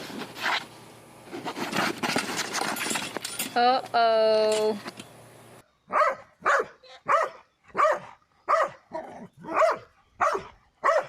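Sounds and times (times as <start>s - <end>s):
dog barking: 5.9s - 11.0s.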